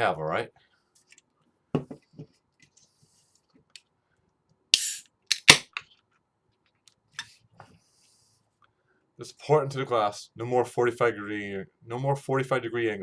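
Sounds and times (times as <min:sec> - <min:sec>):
can hissing open: 0:04.8 - 0:05.6.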